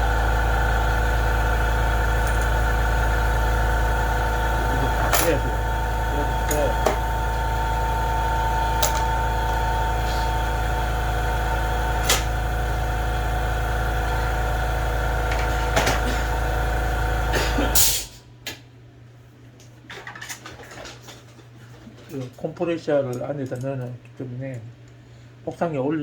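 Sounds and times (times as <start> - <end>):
air compressor humming: 0.0 - 18.4.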